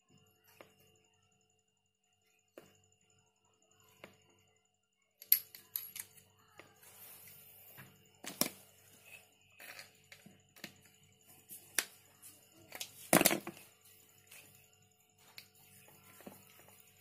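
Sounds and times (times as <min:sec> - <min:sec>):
tools and metal parts clicking: 0:05.2 - 0:06.2, 0:08.3 - 0:10.9.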